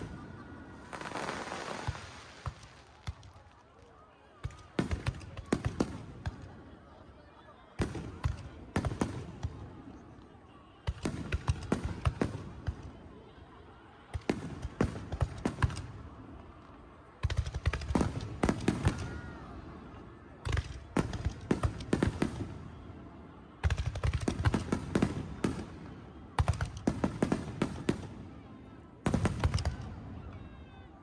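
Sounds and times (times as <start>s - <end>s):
fireworks bangs: 0.0s - 3.8s
fireworks crackling: 0.0s - 6.6s.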